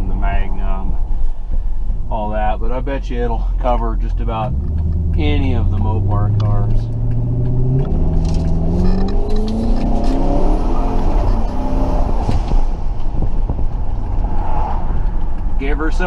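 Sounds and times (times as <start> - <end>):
car engine accelerating: 0.0 - 16.0
road noise: 0.0 - 16.0.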